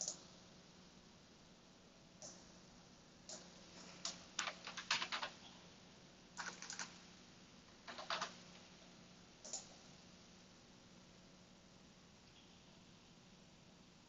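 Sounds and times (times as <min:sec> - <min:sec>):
keyboard typing: 0:04.0 - 0:05.4, 0:06.4 - 0:06.9, 0:07.8 - 0:08.4.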